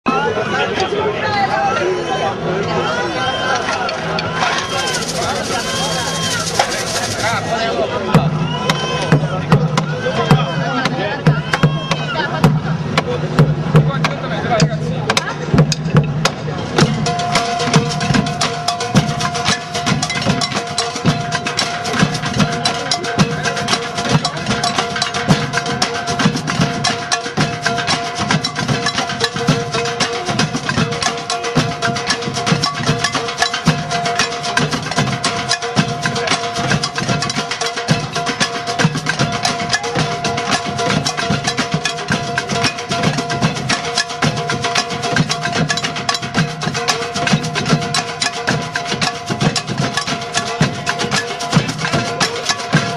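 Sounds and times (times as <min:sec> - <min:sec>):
rapid percussion hits: 0:02.9 - 0:52.9
steady held tone: 0:16.8 - 0:29.4.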